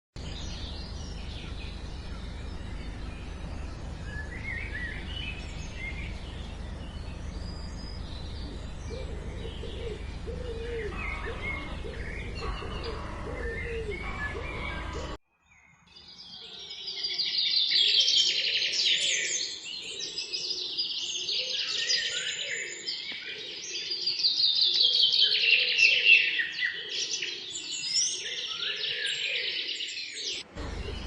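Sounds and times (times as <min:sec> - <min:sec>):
birds chirping and calling: 0:00.2 - 0:15.2, 0:15.9 - 0:31.0
low outdoor background rush: 0:00.2 - 0:15.2, 0:30.4 - 0:31.0.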